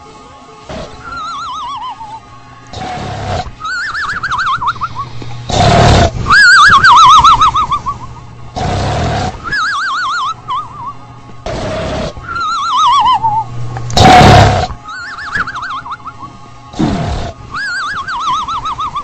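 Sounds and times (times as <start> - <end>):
horse rasping breath: 0.7 - 2.0, 2.7 - 4.2, 5.0 - 7.2, 8.6 - 9.5, 11.4 - 12.5, 13.9 - 14.8, 16.7 - 18.4
horse whinnying: 0.7 - 4.8, 5.5 - 7.8, 8.6 - 10.8, 11.4 - 16.0, 16.8 - 19.0.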